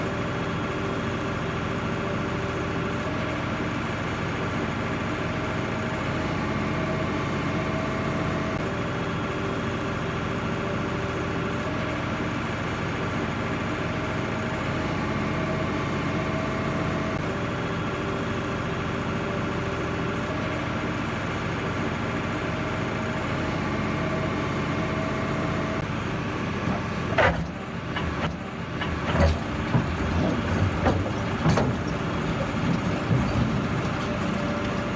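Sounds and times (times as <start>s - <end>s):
heavy machine engine running: 0.0s - 34.9s
sharp knocks and clatter: 26.5s - 34.9s.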